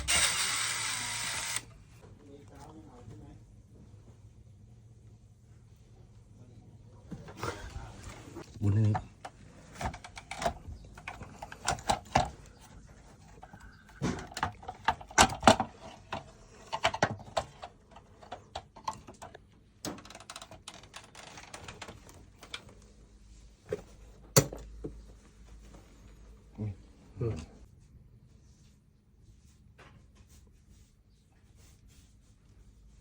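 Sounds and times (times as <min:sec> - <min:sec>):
hard parts clicking and knocking: 0:00.0 - 0:01.6, 0:08.8 - 0:12.7, 0:13.3 - 0:22.6.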